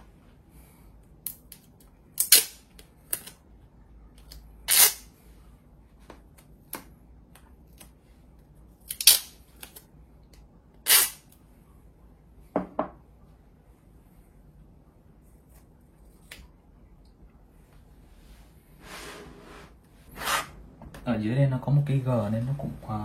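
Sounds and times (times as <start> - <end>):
adhesive tape ripping: 2.2 - 3.4, 4.7 - 5.1, 8.8 - 9.8, 10.8 - 11.2.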